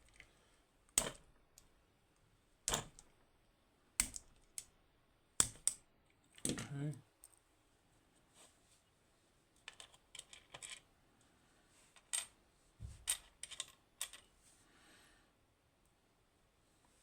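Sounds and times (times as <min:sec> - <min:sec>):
metal lock parts clicking: 0:13.1 - 0:14.3.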